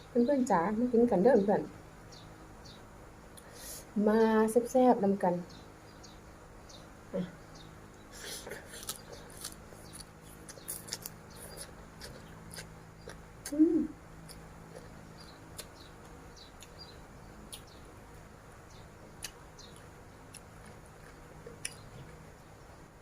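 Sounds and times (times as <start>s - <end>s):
low hum-like vocal sound: 7.1s - 9.6s, 10.5s - 15.9s
crunchy chewing: 8.0s - 13.6s, 14.2s - 17.8s, 18.8s - 22.5s.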